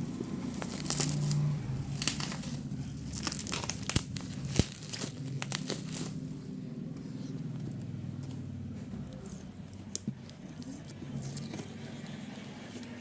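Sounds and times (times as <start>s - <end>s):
packing tape and cardboard tearing: 0.5s - 6.2s, 9.2s - 13.0s.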